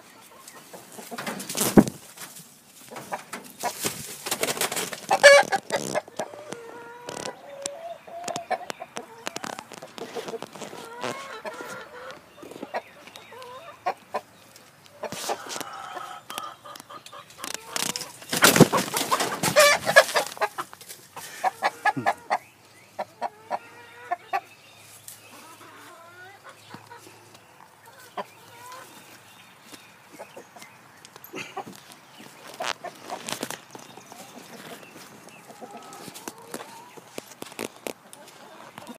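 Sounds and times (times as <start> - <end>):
rooster clucking and squawking: 4.9 - 14.3, 15.0 - 24.5, 35.4 - 37.0.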